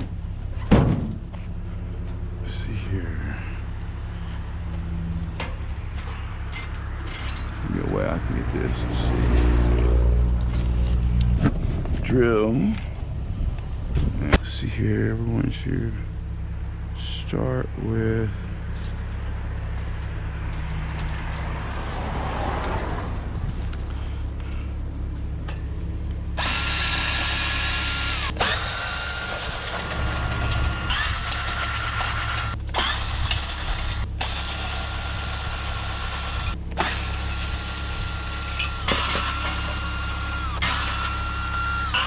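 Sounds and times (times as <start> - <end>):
low steady hum: 22.8 - 35.6
power drill whining: 26.4 - 42.0.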